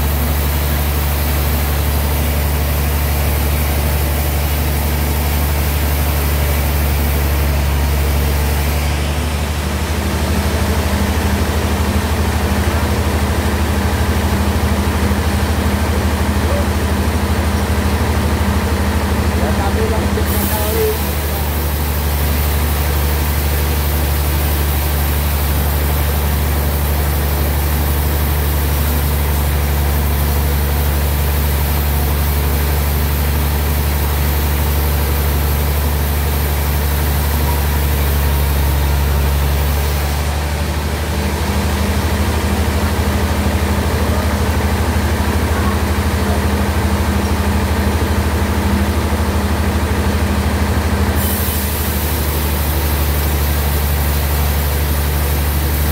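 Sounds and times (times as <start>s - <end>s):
bandsaw running: 0.0s - 14.3s, 19.3s - 47.1s, 50.9s - 55.9s.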